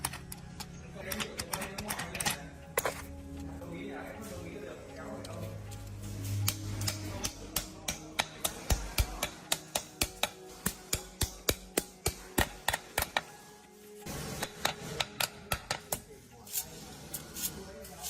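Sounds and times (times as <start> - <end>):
hammer tapping: 6.4 - 13.3, 14.4 - 16.0.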